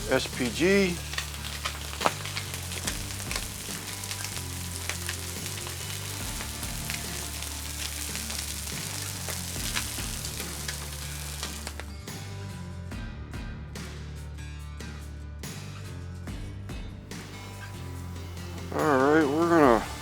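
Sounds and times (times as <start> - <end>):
meat sizzling on a griddle: 0.0 - 11.9
spitting oil pops: 0.0 - 11.9
background music: 0.0 - 20.0.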